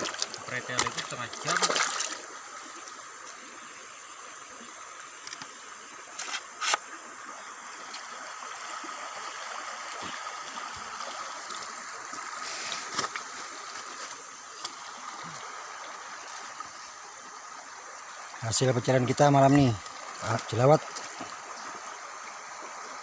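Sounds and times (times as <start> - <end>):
short water splashes: 0.0 - 2.4
river water running: 0.0 - 23.0.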